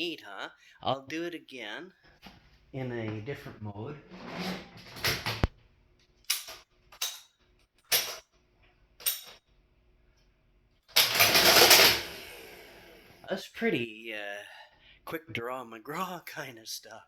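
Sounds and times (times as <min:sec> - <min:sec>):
cash register clicking: 0:06.3 - 0:07.3, 0:07.9 - 0:08.2, 0:09.0 - 0:09.4, 0:10.9 - 0:12.8
faint hum: 0:08.0 - 0:17.0
short mechanical clacks: 0:10.9 - 0:12.3
dense mechanical clatter: 0:10.9 - 0:12.5.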